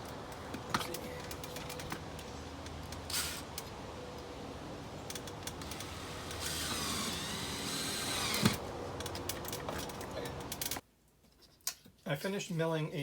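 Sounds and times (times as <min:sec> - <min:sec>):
cordless drill whining: 0:05.6 - 0:08.6.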